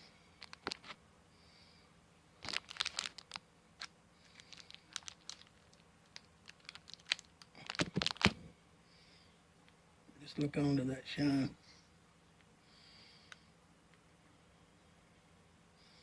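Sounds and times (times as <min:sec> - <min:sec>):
hands rustling and clicking: 0:02.4 - 0:08.4.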